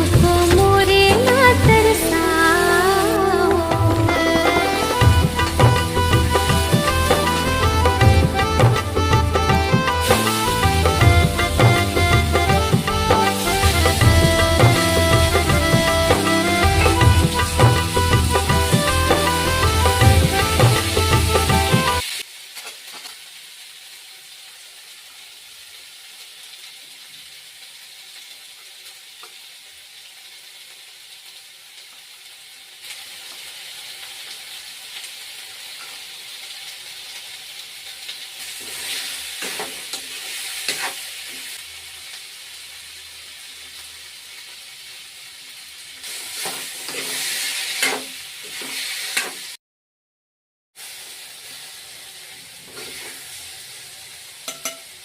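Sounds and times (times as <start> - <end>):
vegetables sizzling in hot oil: 0.0 - 49.6, 50.8 - 55.0
spatula stirring and scraping: 46.4 - 48.0.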